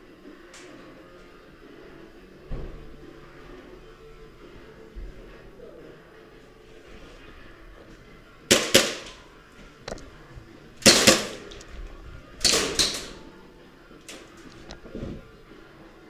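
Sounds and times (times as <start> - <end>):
airsoft guns firing: 8.5 - 9.3, 10.8 - 11.6, 12.4 - 13.2.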